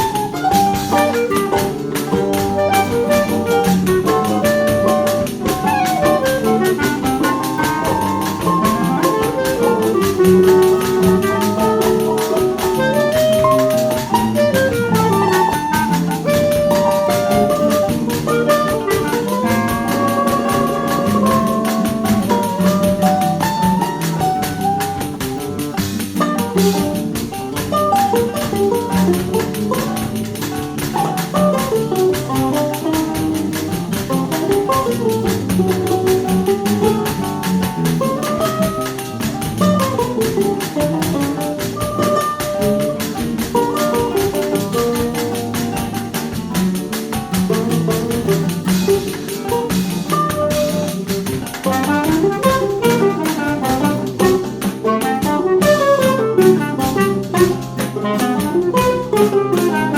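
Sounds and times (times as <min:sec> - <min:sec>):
drum kit: 0:00.0 - 0:59.9
guitar accompaniment: 0:00.0 - 0:59.9
tuba bass line: 0:00.9 - 0:26.9, 0:51.6 - 0:59.9.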